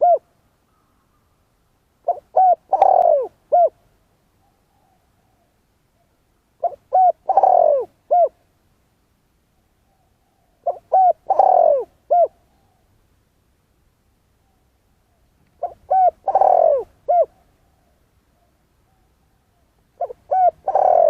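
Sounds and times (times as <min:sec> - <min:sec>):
dove cooing: 0:00.0 - 0:01.1, 0:02.0 - 0:03.8, 0:04.4 - 0:08.4, 0:09.8 - 0:12.9, 0:14.4 - 0:21.0.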